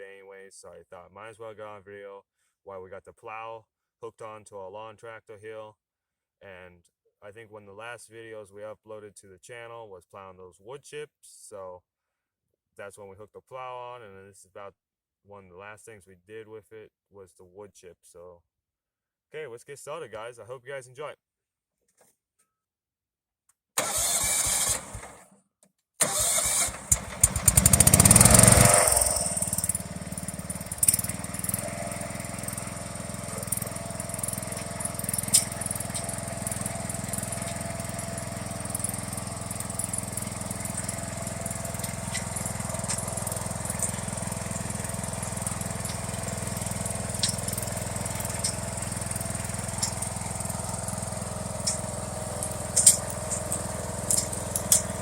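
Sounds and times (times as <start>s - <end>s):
lawn tractor engine cranking and running: 23.8s - 25.2s, 26.0s - 55.0s.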